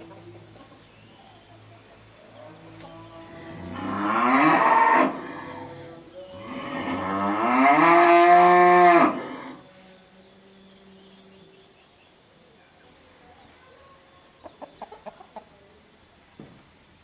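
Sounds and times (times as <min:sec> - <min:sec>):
cow mooing: 0:02.6 - 0:09.6.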